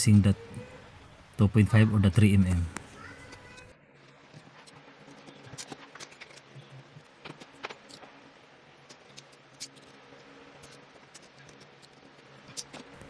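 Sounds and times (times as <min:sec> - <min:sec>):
faint low hum: 0:00.0 - 0:03.6.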